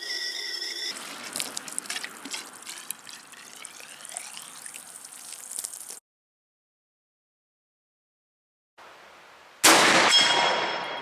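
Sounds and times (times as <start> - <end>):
powder granules being poured: 0.9 - 6.0.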